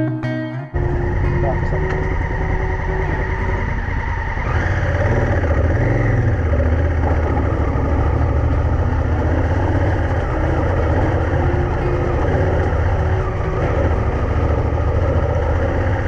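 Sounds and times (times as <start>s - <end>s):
motorcycle engine running: 0.8s - 16.0s.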